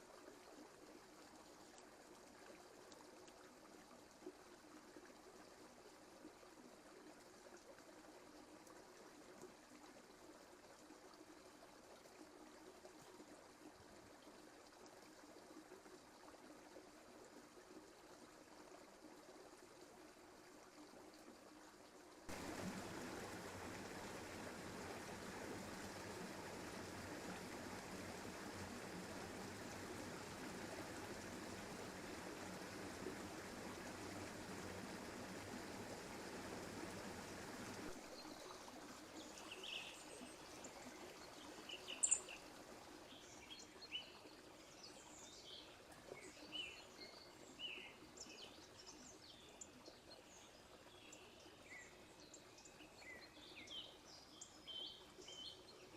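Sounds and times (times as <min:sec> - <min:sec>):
forest stream rushing: 0:22.3 - 0:48.9
small birds chirping: 0:41.7 - 0:42.4.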